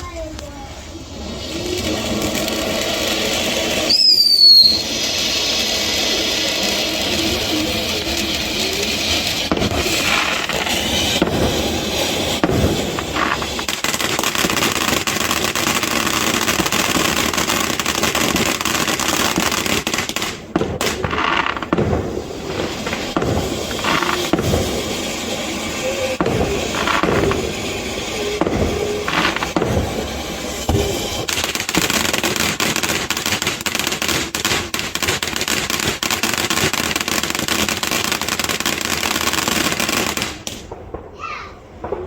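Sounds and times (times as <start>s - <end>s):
firework fountains hissing: 0.0s - 42.0s
falling whistle: 3.9s - 4.9s.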